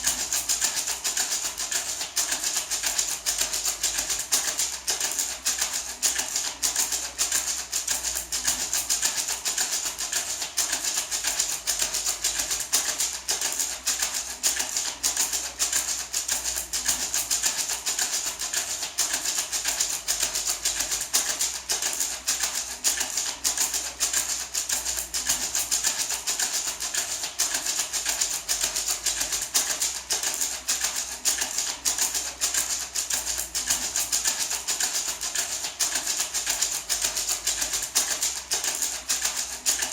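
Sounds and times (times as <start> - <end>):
maraca rattling: 0.0 - 39.9.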